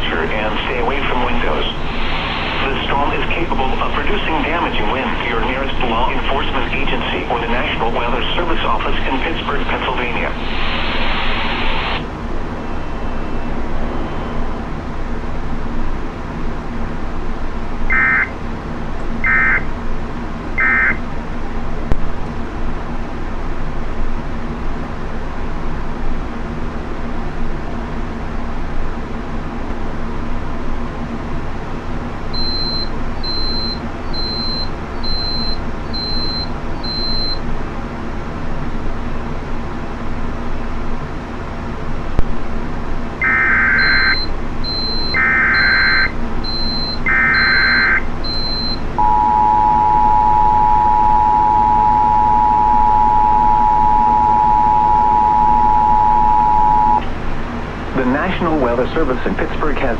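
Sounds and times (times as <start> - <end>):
data burst tones: 17.9 - 18.3, 43.2 - 57.0
two-tone attention signal: 17.9 - 18.3, 43.2 - 57.0
short high beeps: 43.2 - 57.0.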